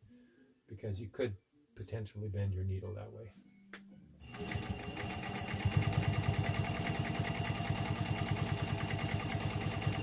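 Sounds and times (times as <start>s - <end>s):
sewing machine stitching: 4.2s - 10.0s.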